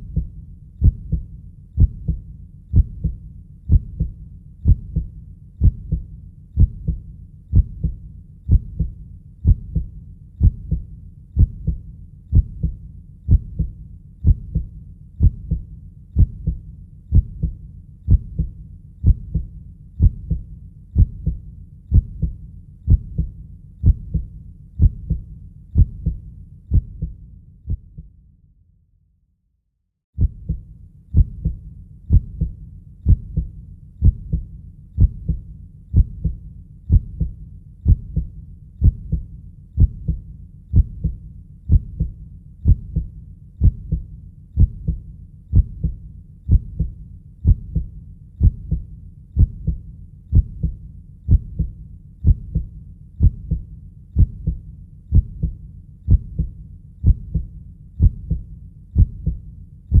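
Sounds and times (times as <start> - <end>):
heartbeat double thump: 30.2 - 30.6, 33.1 - 34.4, 35.0 - 35.4, 36.0 - 39.2, 39.8 - 44.0, 46.5 - 48.8, 49.4 - 53.6, 54.2 - 58.4, 59.0 - 60.0.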